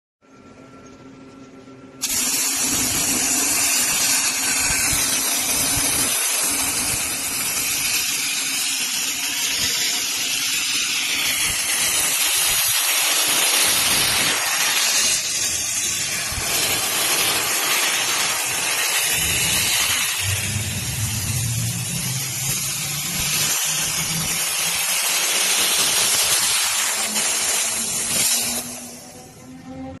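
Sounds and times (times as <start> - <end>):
robot machinery hissing: 2.0 - 29.8.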